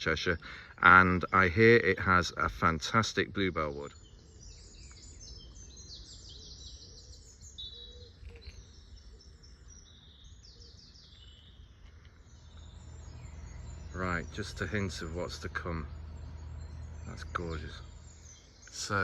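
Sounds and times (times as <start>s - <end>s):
songbirds chirping and trilling: 0.0s - 19.0s
steady low rumble: 12.3s - 19.0s.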